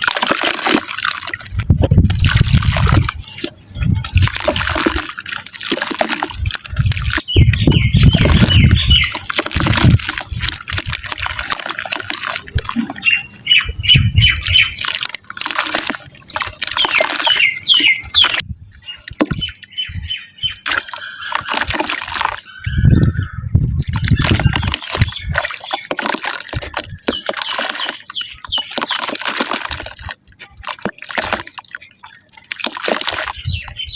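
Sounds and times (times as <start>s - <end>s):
wet mud splashing into water: 0.0s - 13.1s, 14.3s - 19.6s, 20.6s - 33.9s
rapid bird chirps: 7.2s - 10.0s, 11.9s - 15.0s, 16.5s - 29.8s, 31.4s - 33.9s.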